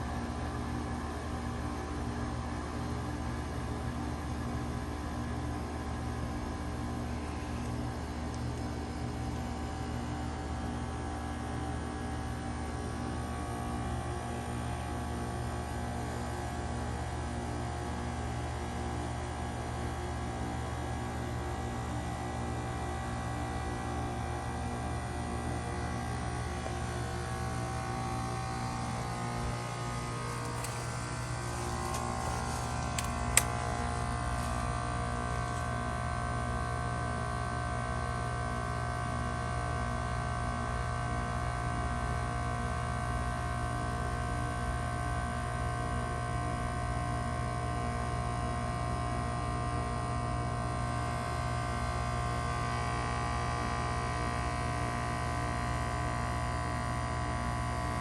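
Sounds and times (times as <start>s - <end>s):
heat pump humming with tones: 0.0s - 58.0s
sharp click: 30.4s - 33.6s.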